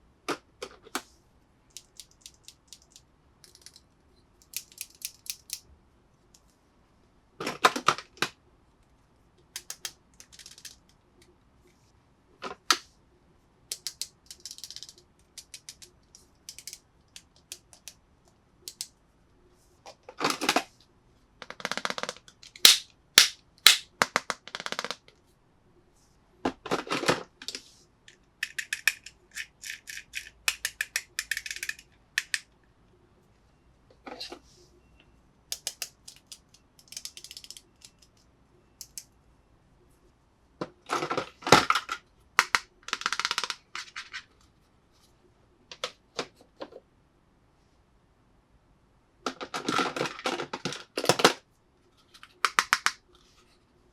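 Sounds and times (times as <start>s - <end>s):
plastic pieces clicking and tapping: 1.7s - 5.6s, 9.6s - 10.9s, 13.7s - 18.0s, 21.4s - 25.0s, 28.1s - 32.5s, 35.5s - 38.2s, 41.6s - 44.2s, 52.2s - 53.0s.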